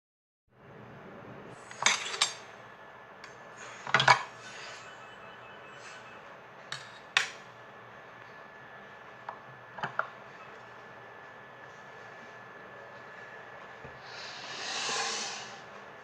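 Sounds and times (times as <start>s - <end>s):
dishes and utensils clinking: 1.7s - 2.5s, 3.8s - 4.8s.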